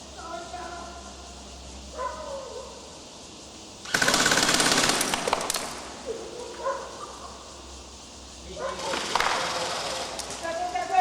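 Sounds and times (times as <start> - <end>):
airsoft rifle full-auto burst: 3.8 - 5.8, 8.8 - 10.4.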